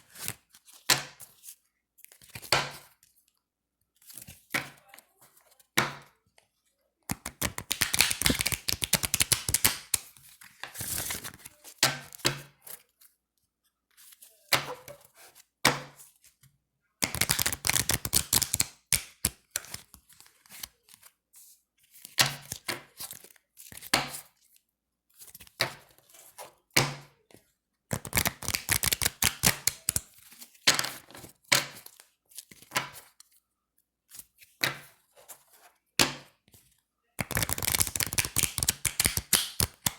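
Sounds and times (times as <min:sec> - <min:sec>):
playing cards being shuffled: 0:07.1 - 0:11.6, 0:17.0 - 0:21.0, 0:27.9 - 0:30.1, 0:37.2 - 0:39.9.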